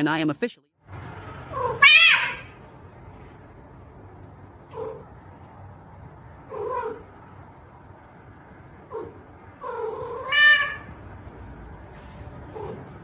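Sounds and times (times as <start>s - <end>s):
cat meowing: 1.5s - 2.6s, 8.9s - 11.0s.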